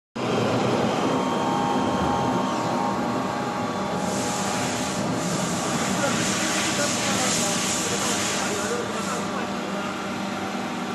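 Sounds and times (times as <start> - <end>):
friction welding machine running: 3.7 - 9.9.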